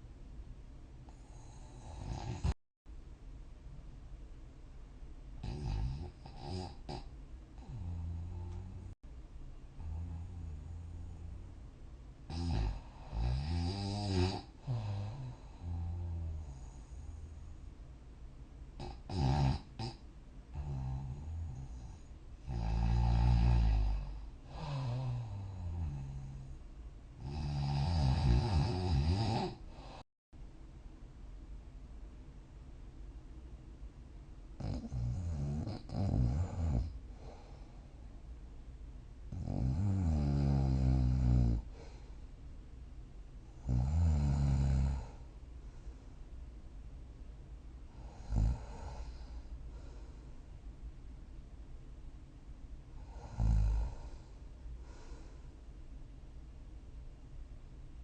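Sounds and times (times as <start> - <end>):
person snoring: 1.1 - 2.6, 5.4 - 9.0, 9.8 - 11.4, 12.3 - 17.4, 18.8 - 26.5, 27.2 - 30.0, 34.6 - 37.7, 39.3 - 42.1, 43.6 - 45.2, 47.9 - 50.0, 53.0 - 55.4.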